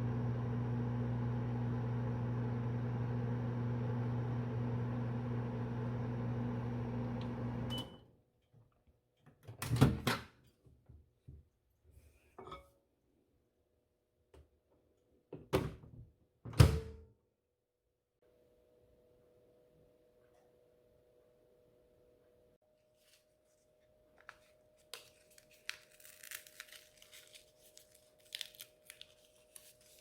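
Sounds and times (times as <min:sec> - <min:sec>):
microwave oven humming: 0:00.0 - 0:08.1.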